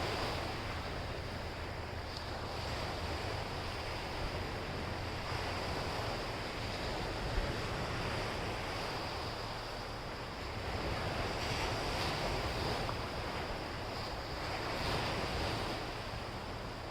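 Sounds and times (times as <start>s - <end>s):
sea waves surf: 0.0s - 16.9s
wind buffeting microphone: 0.0s - 16.9s.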